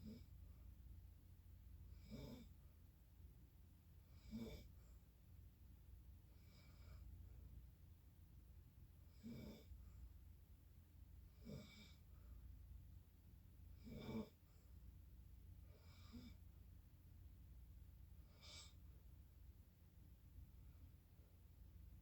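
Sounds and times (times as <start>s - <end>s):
faint snoring: 0.0s - 0.5s, 1.8s - 2.7s, 4.0s - 5.0s, 6.3s - 7.3s, 9.0s - 10.1s, 11.3s - 12.3s, 13.6s - 14.7s, 15.6s - 16.5s, 18.2s - 18.9s
steady low hum: 0.0s - 22.0s.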